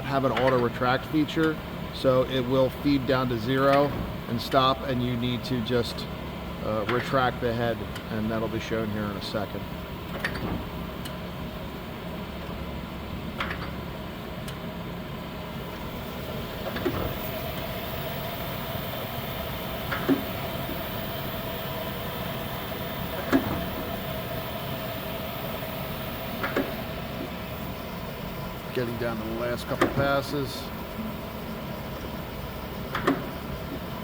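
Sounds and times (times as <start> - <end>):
grinder machine hum: 15.4 - 34.0.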